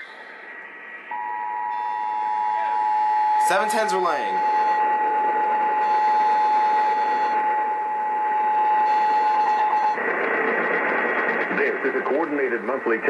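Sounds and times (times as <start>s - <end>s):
radio hiss: 0.0s - 1.2s, 1.8s - 6.2s, 10.0s - 13.0s
two-tone alert signal on radio: 1.1s - 4.9s.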